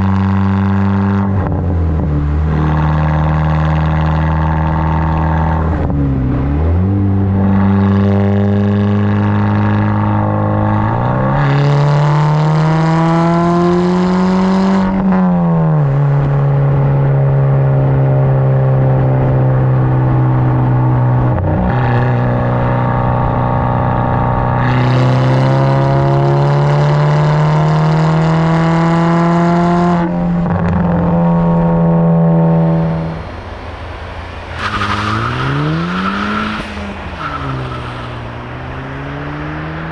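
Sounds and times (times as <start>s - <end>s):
car exhaust accelerating: 0.0s - 39.9s.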